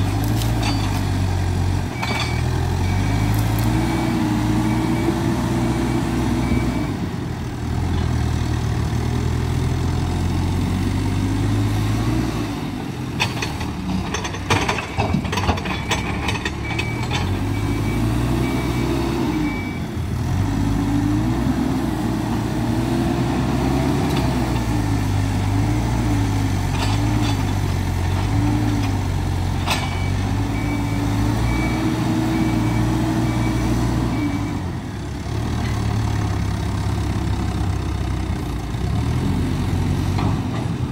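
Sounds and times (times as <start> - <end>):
backhoe diesel engine working: 0.0 - 40.9
reversing alarm beeping: 2.0 - 7.0, 14.8 - 19.9, 29.7 - 34.7
knocks and clatter: 13.2 - 17.4.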